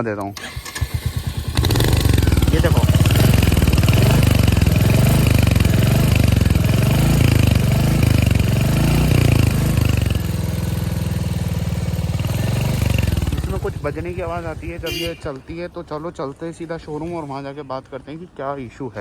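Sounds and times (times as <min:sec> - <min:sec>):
motorcycle engine revving and idling: 0:00.5 - 0:15.3.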